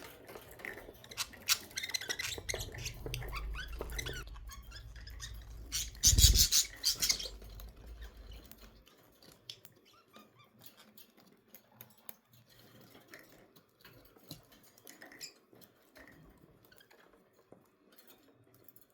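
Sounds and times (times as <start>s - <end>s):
faint clicks and scratching: 0.0s - 18.9s
wings fluttering: 0.3s - 8.8s
budgerigar chirps: 1.2s - 7.4s.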